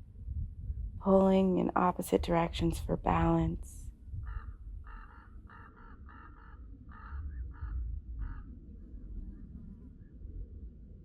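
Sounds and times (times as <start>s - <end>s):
low steady rumble: 0.0s - 11.0s.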